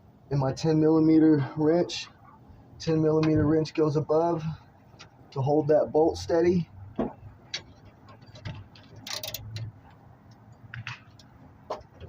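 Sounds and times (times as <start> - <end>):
metal tool clicks and clinks: 9.0 - 9.7.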